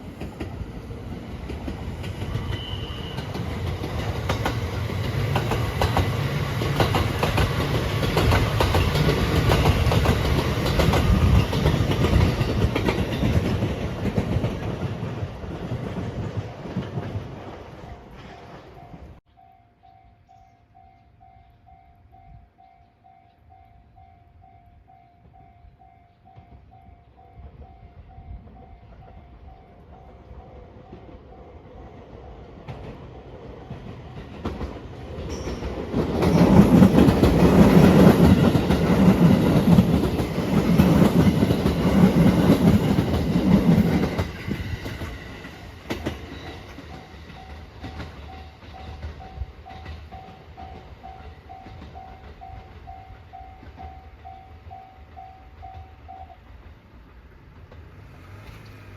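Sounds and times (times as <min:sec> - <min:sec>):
passenger train passing: 0:00.0 - 0:58.9
wheels clattering over rail joints: 0:32.6 - 0:52.9.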